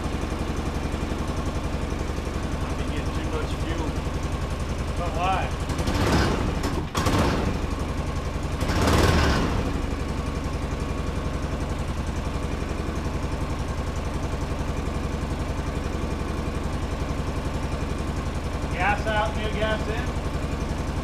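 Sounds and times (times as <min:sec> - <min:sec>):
utility vehicle engine idling: 0:00.0 - 0:21.0.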